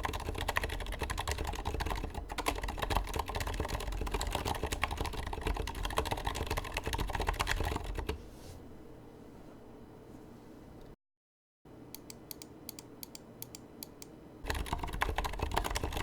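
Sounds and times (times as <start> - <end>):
muted keyboard typing: 0.0 - 8.2, 14.4 - 16.0.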